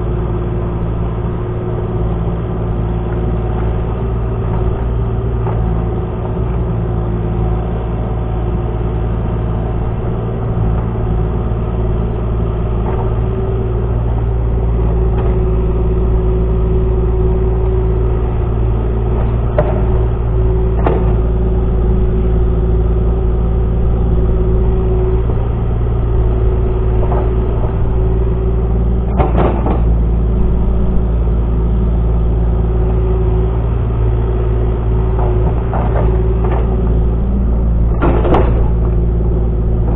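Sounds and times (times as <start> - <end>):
excavator engine running: 0.0 - 39.9
knocks and clanks: 19.2 - 20.1, 29.1 - 30.1, 35.0 - 37.2, 37.8 - 39.9.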